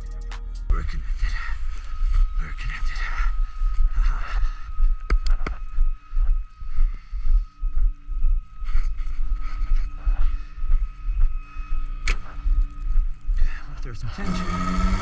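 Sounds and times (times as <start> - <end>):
heavy throbbing low rumble: 0.0 - 15.0
steady hum: 0.7 - 15.0
tow truck winch: 14.2 - 15.0.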